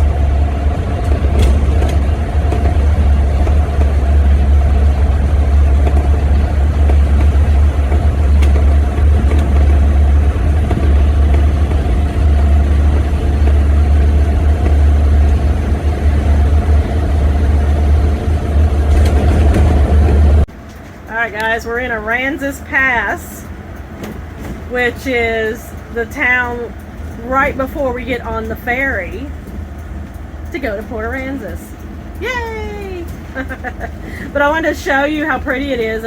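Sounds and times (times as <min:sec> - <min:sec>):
droning hum: 0:00.0 - 0:36.0
vehicle engine and road noise: 0:00.0 - 0:36.0.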